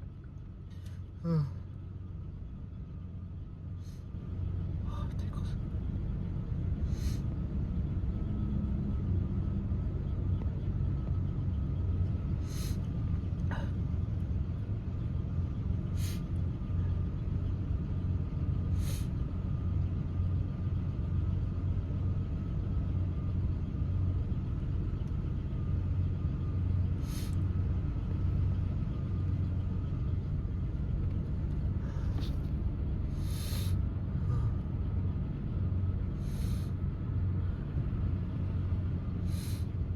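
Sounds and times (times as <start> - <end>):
steady low rumble: 0.0 - 39.9
person sniffing: 33.2 - 33.8, 36.2 - 36.7, 39.3 - 39.6.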